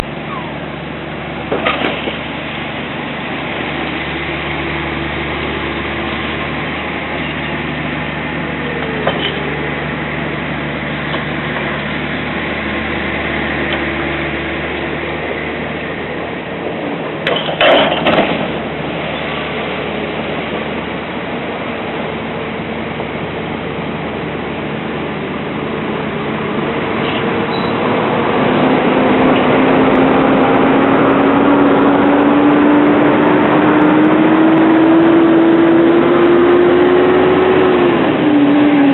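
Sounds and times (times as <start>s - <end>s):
vehicle engine drone: 0.0s - 38.9s
loud clatter: 1.5s - 2.3s, 17.2s - 18.6s.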